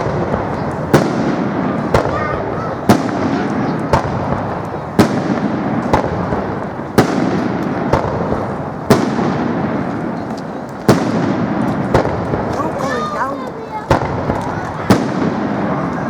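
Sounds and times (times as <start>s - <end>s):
firework crackle and rumble: 0.0s - 16.0s
firework shells bursting: 0.0s - 16.0s.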